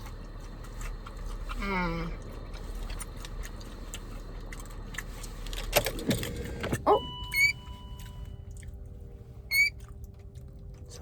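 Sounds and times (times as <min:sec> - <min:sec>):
car warning chime beeps: 0:06.8 - 0:08.7, 0:09.5 - 0:09.8.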